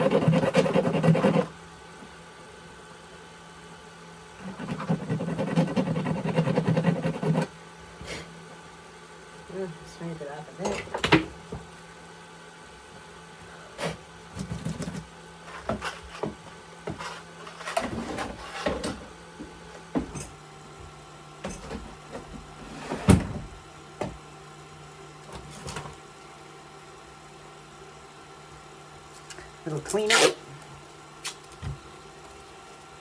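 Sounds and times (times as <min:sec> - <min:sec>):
scraping and rubbing: 0:04.4 - 0:07.5.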